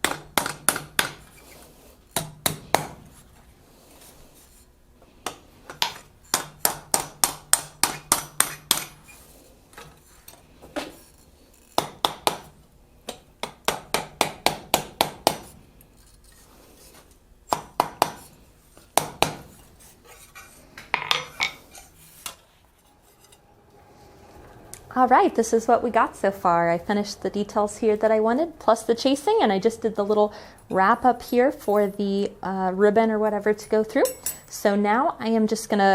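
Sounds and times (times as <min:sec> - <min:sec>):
small hammer striking steel: 0:05.2 - 0:09.1.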